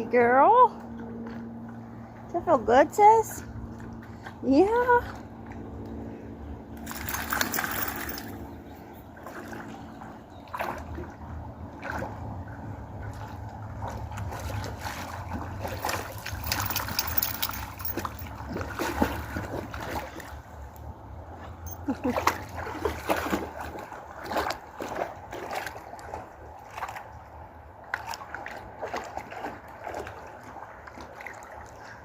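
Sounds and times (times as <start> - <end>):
dog splashing in pond water: 6.8 - 32.0.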